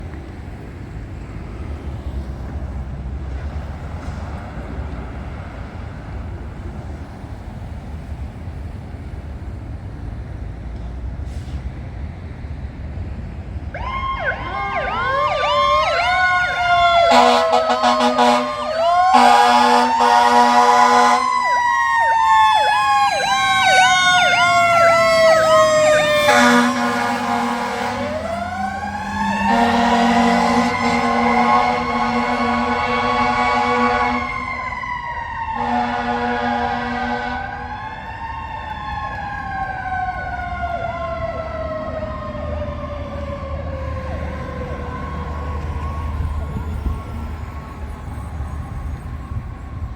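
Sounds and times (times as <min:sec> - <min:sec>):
low road rumble: 0:00.0 - 0:49.9
fire engine siren yelping: 0:13.7 - 0:49.9
air horn blasts: 0:16.6 - 0:21.4, 0:26.0 - 0:28.6, 0:29.3 - 0:34.6, 0:35.5 - 0:37.7.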